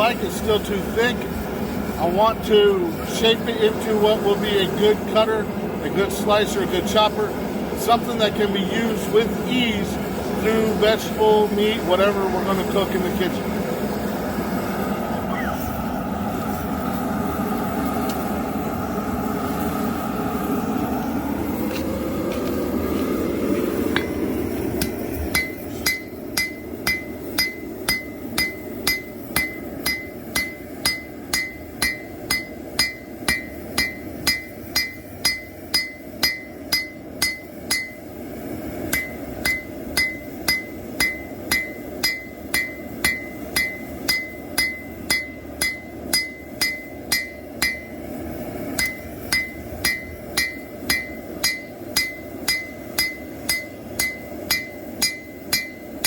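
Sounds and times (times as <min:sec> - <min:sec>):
steady rushing noise: 0:00.0 - 0:56.0
hammer striking steel on anvil: 0:24.8 - 0:38.1, 0:38.9 - 0:48.1, 0:48.8 - 0:56.0.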